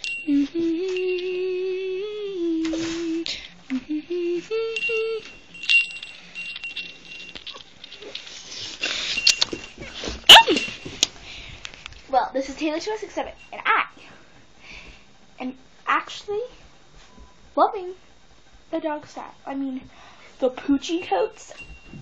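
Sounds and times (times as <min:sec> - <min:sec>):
person humming: 0:00.0 - 0:05.4.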